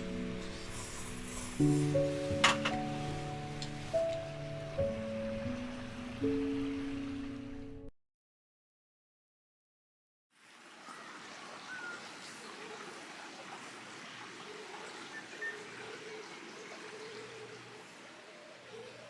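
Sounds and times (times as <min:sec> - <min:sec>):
mountain stream running: 0:00.0 - 0:07.8, 0:10.4 - 0:19.0
faint bird chirps: 0:10.8 - 0:19.0.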